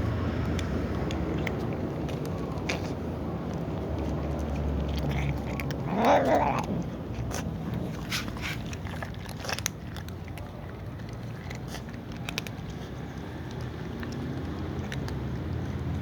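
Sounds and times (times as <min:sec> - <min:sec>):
cats chewing with crunching clicks: 0:00.0 - 0:16.0.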